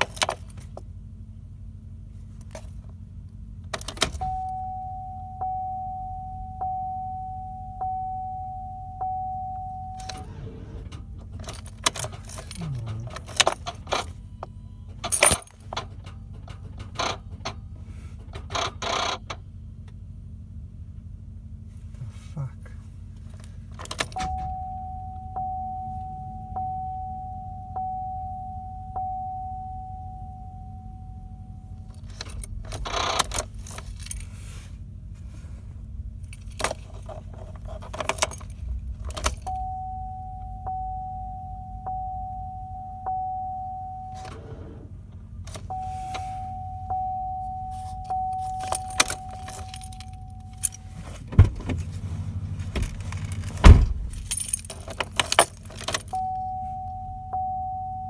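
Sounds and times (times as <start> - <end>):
dashboard warning chime: 4.0 - 10.8, 11.5 - 15.4, 24.0 - 34.2, 38.2 - 44.8, 45.4 - 51.0, 54.1 - 58.0
keys jangling: 11.3 - 14.2, 15.0 - 15.6, 31.9 - 34.4, 36.2 - 39.5, 47.8 - 51.9, 52.8 - 56.2.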